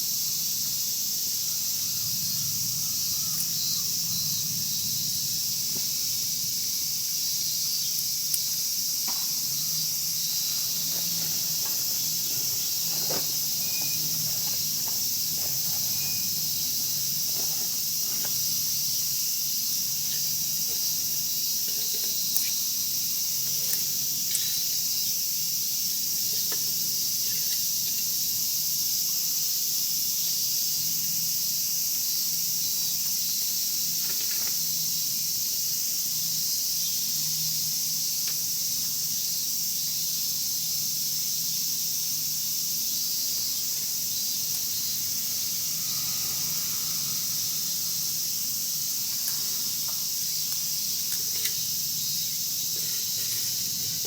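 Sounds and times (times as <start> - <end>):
steady high hiss: 0.0 - 54.0
wood fire crackling: 10.3 - 18.7.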